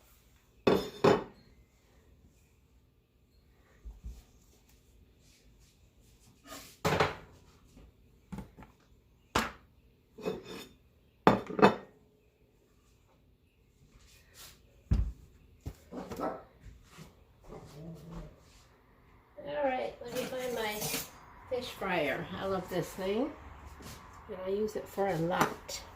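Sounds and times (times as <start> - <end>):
metal utensil scraping baking dish: 10.2 - 10.8, 20.0 - 21.3.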